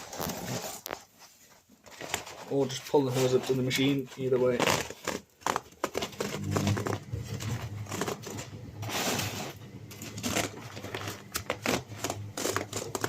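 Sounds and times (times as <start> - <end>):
vent hose crinkling and rustling: 0.0 - 13.0
low steady hum: 6.2 - 13.0.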